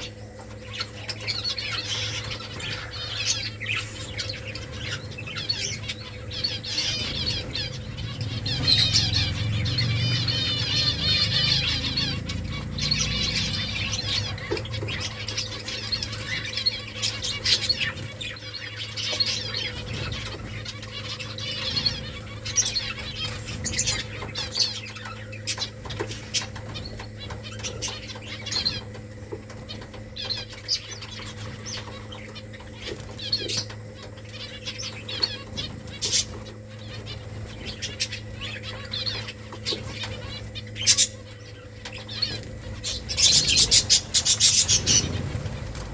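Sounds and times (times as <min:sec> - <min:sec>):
finches chirping: 0:00.0 - 0:45.9
steady low hum: 0:00.0 - 0:45.9
wing flutters: 0:42.2 - 0:45.9.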